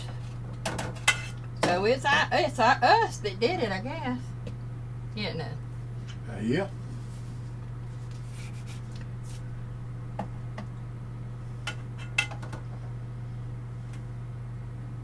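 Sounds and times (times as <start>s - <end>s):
steady low hum: 0.0s - 15.0s
kitchenware clinking and tapping: 11.7s - 12.6s.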